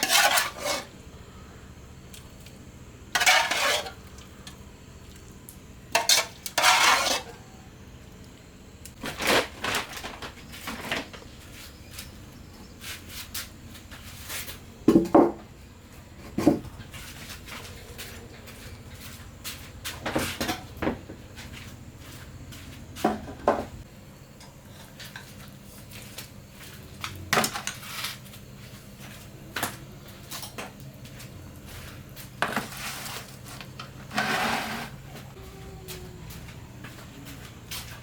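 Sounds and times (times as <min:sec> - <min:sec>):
dish scraping: 0:00.0 - 0:00.9, 0:03.1 - 0:04.2, 0:05.9 - 0:07.5, 0:32.4 - 0:35.2.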